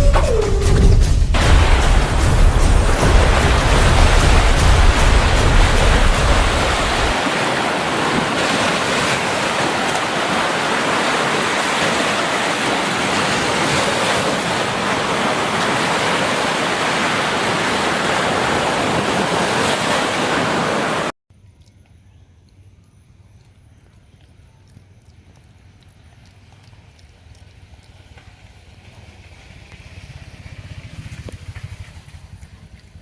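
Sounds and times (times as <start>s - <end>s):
deep rumble: 0.0s - 7.2s
loud rushing noise: 0.0s - 11.7s.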